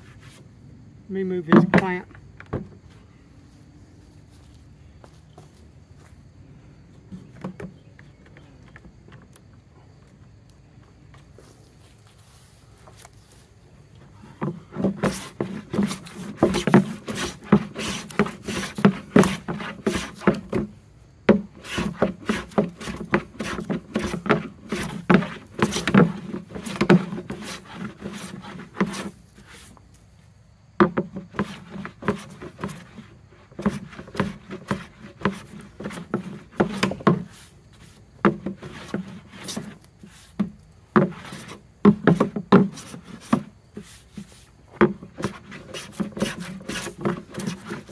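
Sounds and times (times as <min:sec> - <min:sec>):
hand plane shaving wood: 0:14.4 - 0:20.7, 0:21.3 - 0:29.7, 0:30.9 - 0:40.4, 0:41.0 - 0:47.9.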